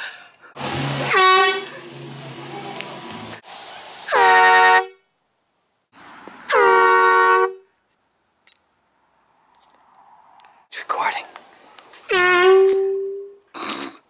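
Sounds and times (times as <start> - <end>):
air horn blasts: 0.6 - 3.0, 4.1 - 5.0, 6.5 - 7.7, 12.1 - 13.3.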